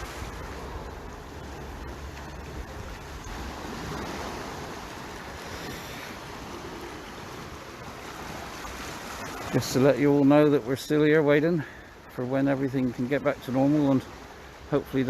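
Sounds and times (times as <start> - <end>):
wind rumbling on microphone: 0.0 - 9.6
sea waves washing onto shore: 0.0 - 15.0.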